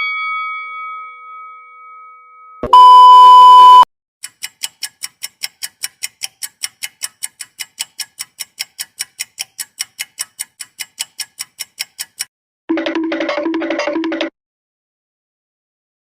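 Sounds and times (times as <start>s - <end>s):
loud electronic beep: 2.6s - 3.9s
clock ticking: 4.2s - 14.3s.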